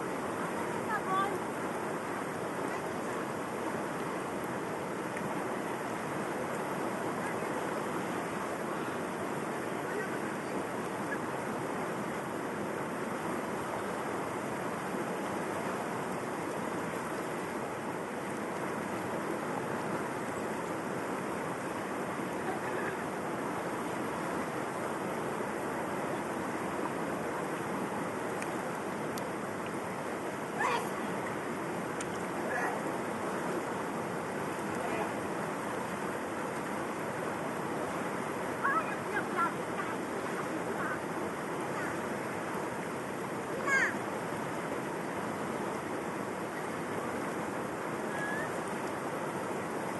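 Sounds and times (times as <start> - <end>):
river water rushing: 0.0 - 49.9
high-pitched wavering calls: 48.1 - 48.6.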